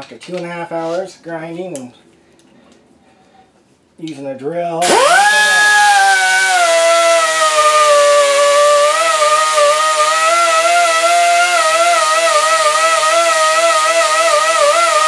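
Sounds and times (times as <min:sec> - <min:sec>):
air die grinder whining: 0:04.8 - 0:15.0.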